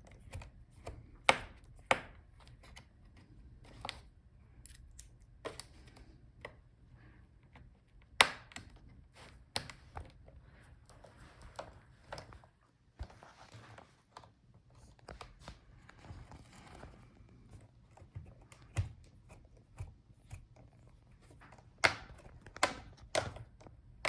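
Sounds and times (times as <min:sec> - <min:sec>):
quiet scraping rustles: 0:10.9 - 0:18.5
screwdriver clicks on plastic: 0:21.8 - 0:23.7.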